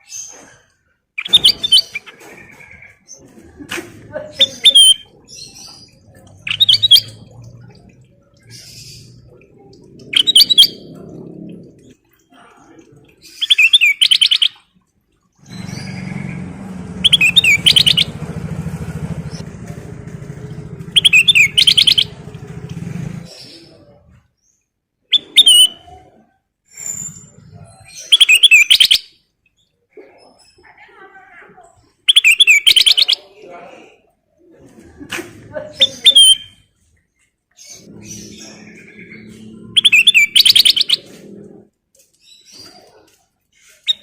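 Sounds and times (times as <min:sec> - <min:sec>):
bulbul singing: 0:01.2 - 0:03.2, 0:04.4 - 0:12.2, 0:13.2 - 0:14.7, 0:15.4 - 0:23.8, 0:32.1 - 0:33.4, 0:37.6 - 0:41.1
low rumble: 0:15.4 - 0:24.2.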